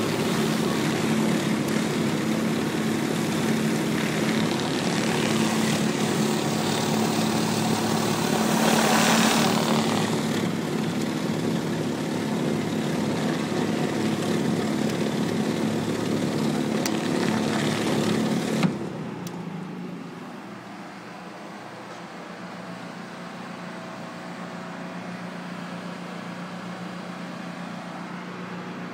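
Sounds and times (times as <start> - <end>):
pressure washer spraying concrete: 0.0 - 18.6.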